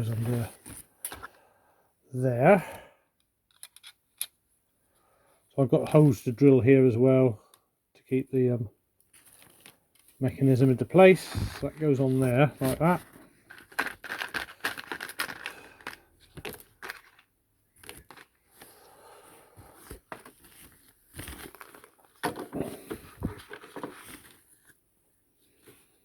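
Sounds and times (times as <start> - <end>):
model parts clicking and tapping: 3.2 - 4.4
paper crinkling: 9.1 - 10.3, 11.2 - 18.8, 19.8 - 22.2.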